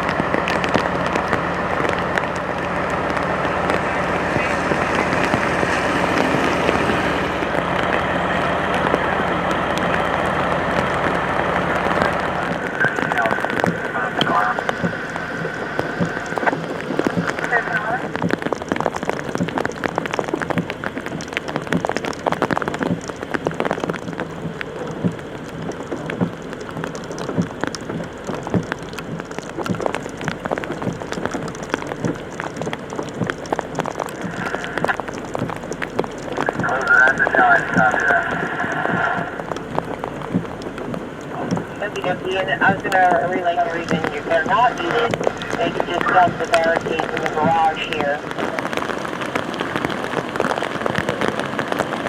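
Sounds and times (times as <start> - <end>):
vehicle engine idling: 0.0 - 32.5
steady rain hiss: 0.0 - 52.0.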